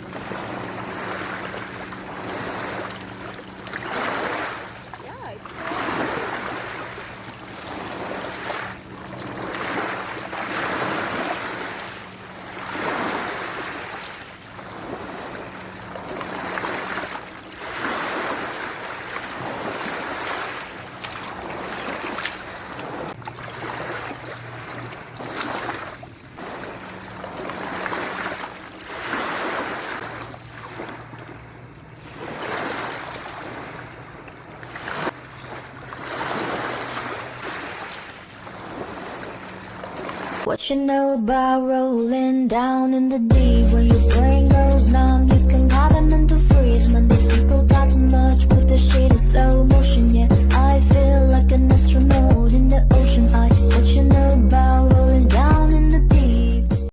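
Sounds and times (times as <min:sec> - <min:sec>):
rushing water: 0:00.0 - 0:40.5
jet ski engine running: 0:00.0 - 0:56.9.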